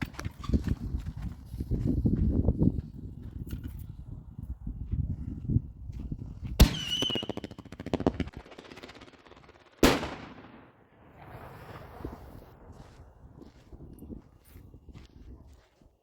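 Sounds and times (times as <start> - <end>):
firework bangs: 6.6 - 13.4
dense firework crackling: 6.6 - 13.8.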